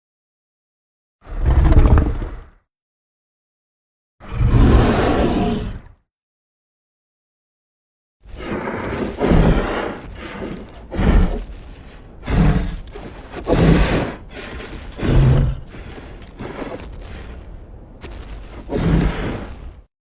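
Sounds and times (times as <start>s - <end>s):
deep heavy creature calls: 8.3s - 17.4s, 18.0s - 19.8s.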